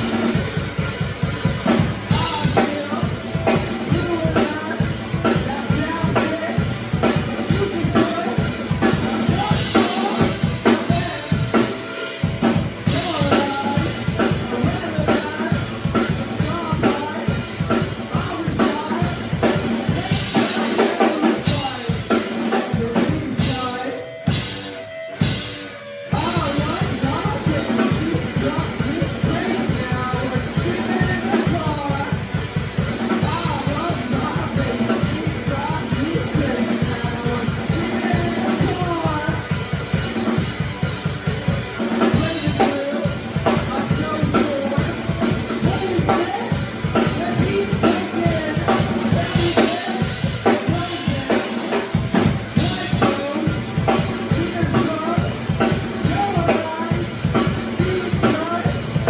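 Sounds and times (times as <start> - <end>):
bass drum and snare beat: 0.0 - 22.2
live band playing: 0.0 - 59.0.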